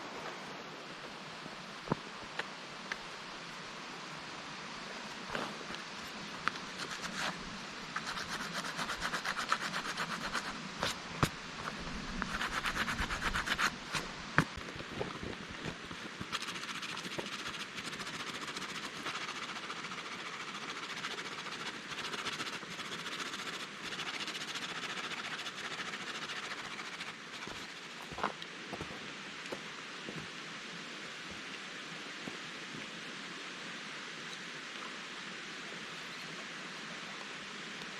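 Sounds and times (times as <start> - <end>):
mountain stream rushing: 0.0 - 37.9
pumice stone rasping on hide: 8.0 - 11.0, 12.2 - 14.0, 16.2 - 27.8.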